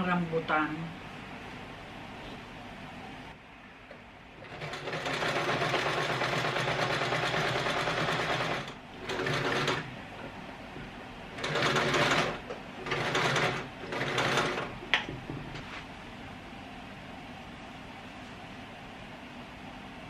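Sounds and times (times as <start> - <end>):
electric sewing machine stitching: 4.4 - 9.9, 11.3 - 14.7.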